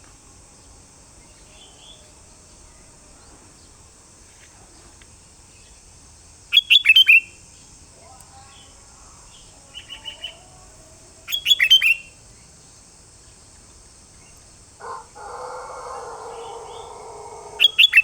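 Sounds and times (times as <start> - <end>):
bird chirps: 6.5 - 7.3, 11.3 - 12.2, 16.0 - 18.0
bird whistled song phrase: 17.6 - 18.0.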